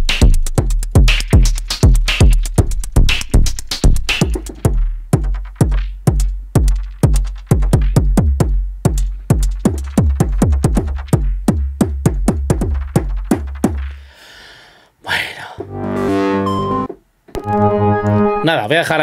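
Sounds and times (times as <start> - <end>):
deep synth bass line: 15.7 - 18.4.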